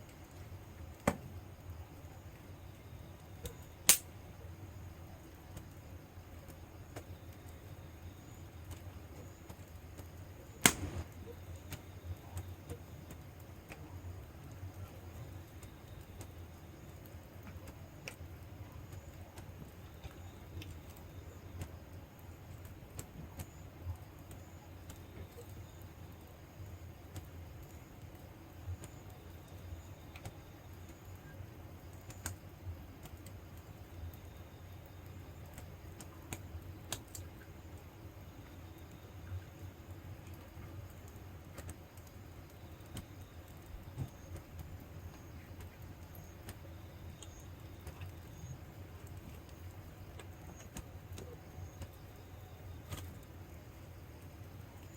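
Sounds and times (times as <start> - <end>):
low steady hum: 0.0 - 54.9
wood fire crackling: 0.0 - 54.9
loud fire pop: 10.6 - 11.2.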